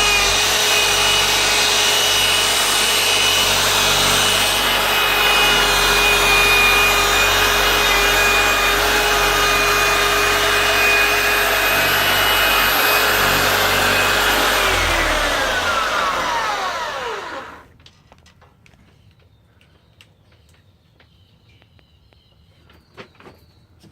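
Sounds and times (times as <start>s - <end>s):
electric power tool whining: 0.0s - 17.7s.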